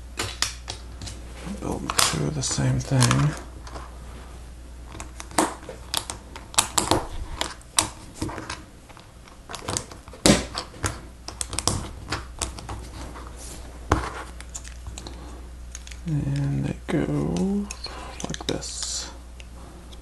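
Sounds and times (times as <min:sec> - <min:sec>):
small plastic parts clicking: 0:14.4 - 0:16.6, 0:17.2 - 0:20.0.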